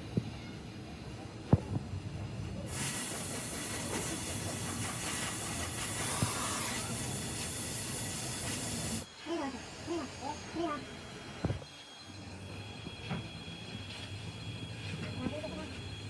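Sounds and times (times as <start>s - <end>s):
air tool hissing: 2.7s - 9.1s.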